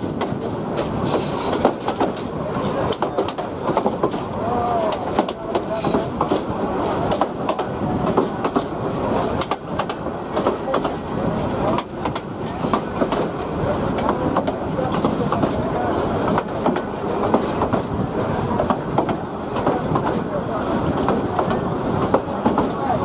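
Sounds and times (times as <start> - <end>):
train wheels rumbling on rail: 0.0 - 23.0.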